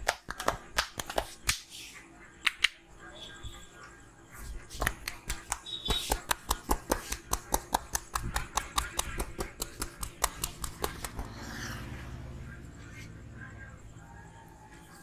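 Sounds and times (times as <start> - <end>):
hands slapping a head: 0.0 - 1.7, 2.4 - 2.8, 4.7 - 11.3.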